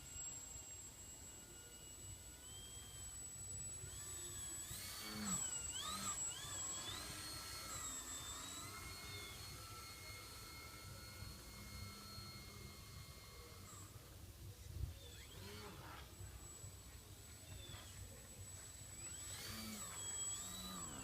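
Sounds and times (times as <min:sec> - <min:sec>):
model plane electric motor whine: 0:00.0 - 0:21.0.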